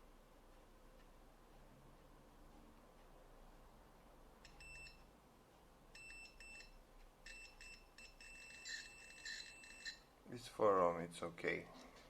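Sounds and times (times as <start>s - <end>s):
multimeter continuity beeps: 4.4s - 5.1s, 5.9s - 10.2s.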